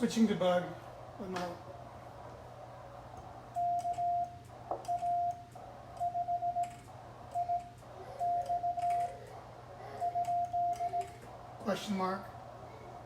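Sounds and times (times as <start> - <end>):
faint low hum: 0.0 - 13.0
morse code tone: 6.0 - 6.7, 7.4 - 9.1.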